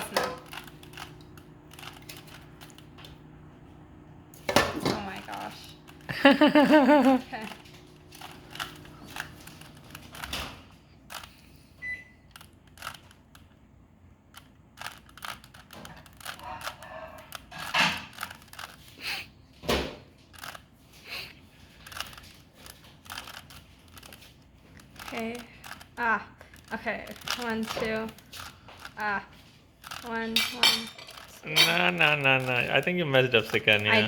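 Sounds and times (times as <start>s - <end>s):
puzzle cube plastic clicks: 8.1s - 11.6s, 12.2s - 13.6s, 14.3s - 19.2s, 20.3s - 20.6s, 21.2s - 29.1s.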